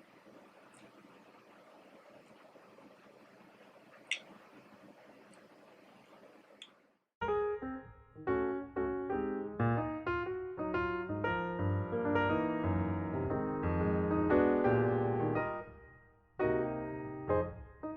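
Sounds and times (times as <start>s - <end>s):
gentle piano music: 7.2s - 17.9s.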